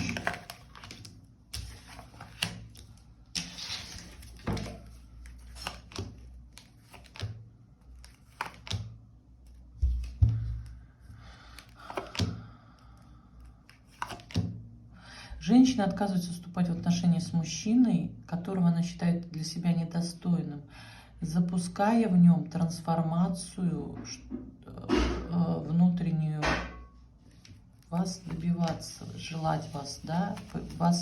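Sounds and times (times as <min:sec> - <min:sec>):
cards shuffling and sliding: 0:00.0 - 0:10.3, 0:11.5 - 0:12.4, 0:13.4 - 0:14.5, 0:27.3 - 0:31.0.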